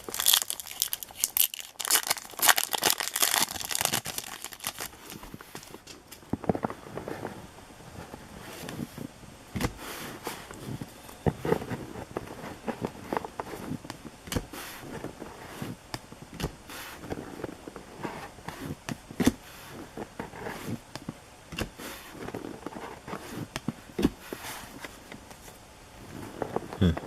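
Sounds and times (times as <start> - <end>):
cards and wrappers rustling: 0.0 - 9.1.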